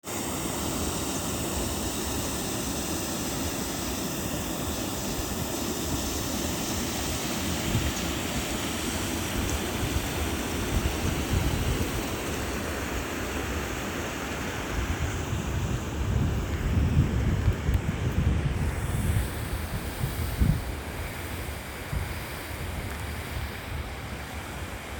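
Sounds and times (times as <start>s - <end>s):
waterfall rushing: 0.0s - 16.8s
wind buffeting microphone: 7.0s - 13.1s, 14.5s - 24.0s.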